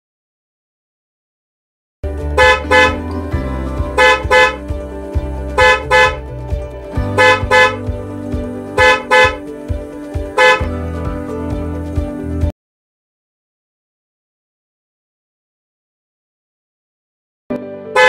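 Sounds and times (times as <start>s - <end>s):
vehicle horn double toots: 2.4s - 3.0s, 4.0s - 4.6s, 5.6s - 6.2s, 7.2s - 7.8s, 8.8s - 9.4s, 10.4s - 10.7s.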